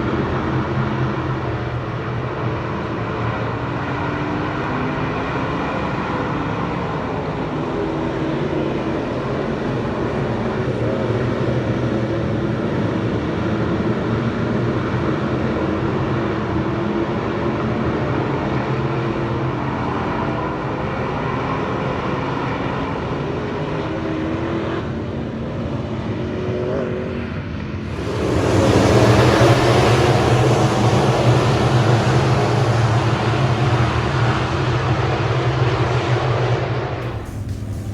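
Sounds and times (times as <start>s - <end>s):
race car engine running hard: 27.8s - 37.9s.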